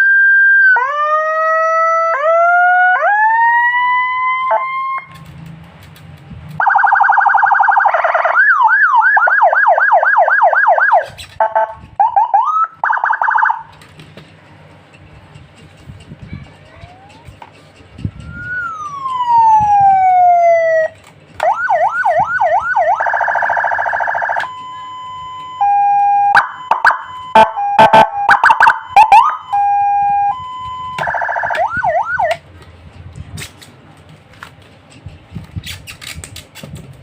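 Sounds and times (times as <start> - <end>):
electronic siren switching tones: 0.0 - 5.3, 6.6 - 13.8, 18.2 - 32.4.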